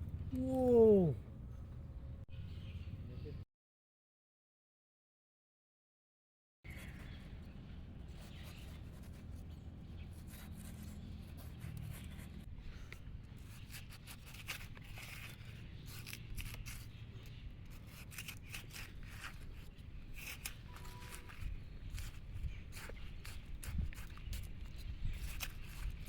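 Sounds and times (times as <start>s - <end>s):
clicks snips and scrapes: 10.2s - 26.0s.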